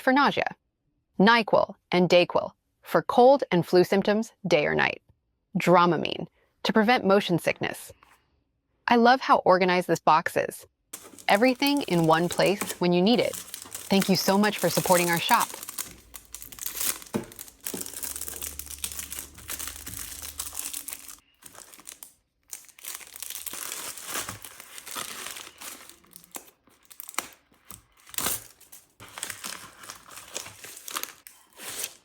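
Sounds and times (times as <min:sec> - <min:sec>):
packaging crinkling: 0:11.0 - 0:32.0.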